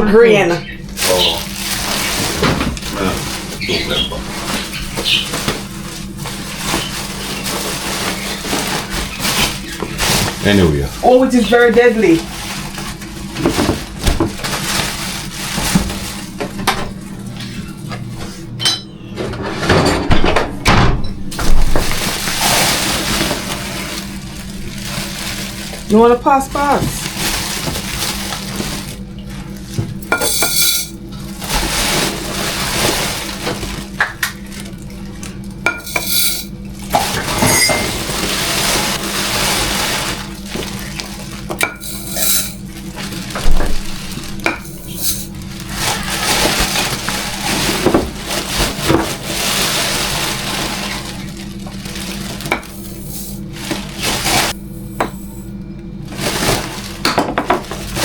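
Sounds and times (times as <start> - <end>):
dishes and cutlery clattering: 18.6 - 20.4, 37.0 - 38.1.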